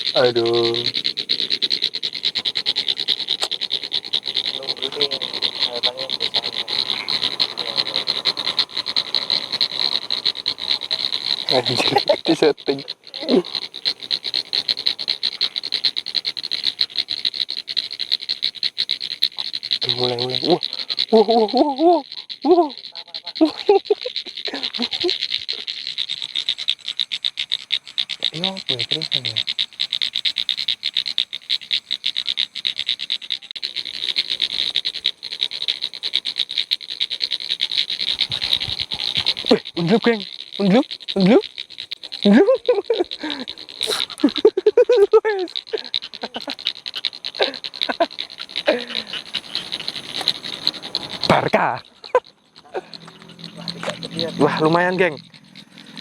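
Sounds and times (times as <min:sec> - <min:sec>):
frogs calling in chorus: 0:00.0 - 0:56.0.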